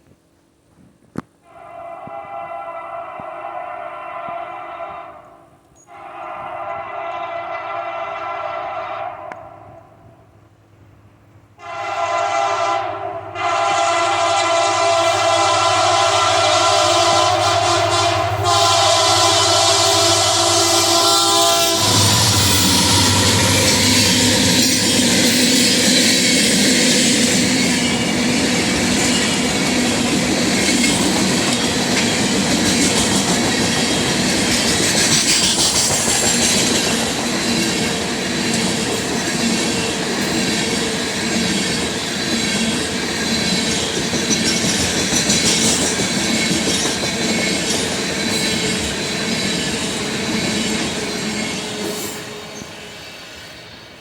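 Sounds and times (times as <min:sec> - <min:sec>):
steel wheels clattering over rail joints: 0:16.4 - 0:53.6
high-pitched wheel squeal: 0:19.8 - 0:26.4.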